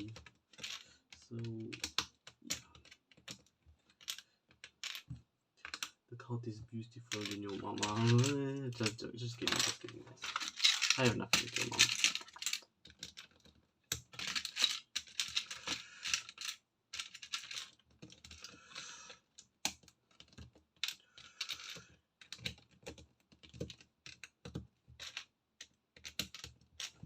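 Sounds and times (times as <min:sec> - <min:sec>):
plastic toy bricks clicking: 0:00.0 - 0:06.0, 0:07.1 - 0:18.6, 0:19.3 - 0:27.0
rummaging among loose pieces: 0:07.1 - 0:12.6.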